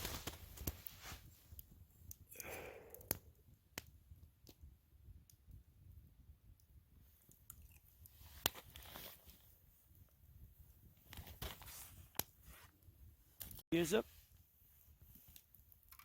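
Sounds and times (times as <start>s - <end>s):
soft rustle: 0.0s - 2.0s, 7.0s - 15.8s
sharp clicks and pops: 15.3s - 16.0s.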